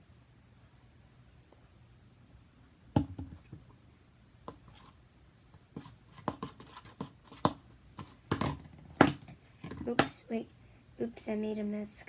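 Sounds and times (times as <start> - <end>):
objects knocking when handled: 3.0 - 3.7, 6.2 - 10.1.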